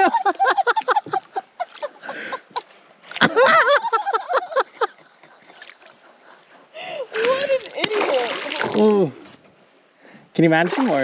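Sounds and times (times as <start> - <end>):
man laughing hard: 0.0 - 2.5, 3.2 - 6.9.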